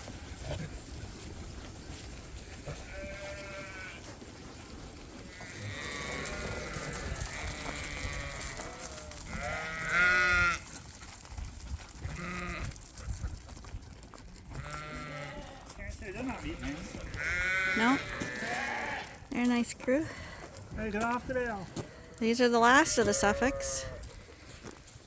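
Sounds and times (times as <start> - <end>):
lambs bleating: 2.6 - 4.0, 5.3 - 10.7, 12.0 - 12.8, 14.5 - 19.3, 21.5 - 24.4.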